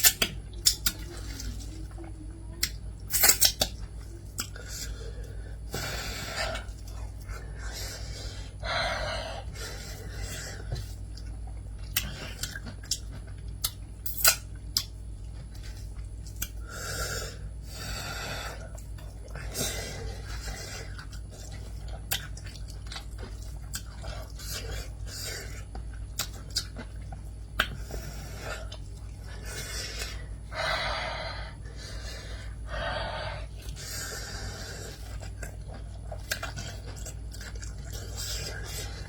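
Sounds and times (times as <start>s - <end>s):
person chewing crunchy food: 0.0s - 1.7s, 2.6s - 39.0s
wet mouth sounds: 0.0s - 5.0s, 10.2s - 15.0s, 18.4s - 30.4s, 33.4s - 39.0s
sharp mouth clicks: 2.6s - 4.6s.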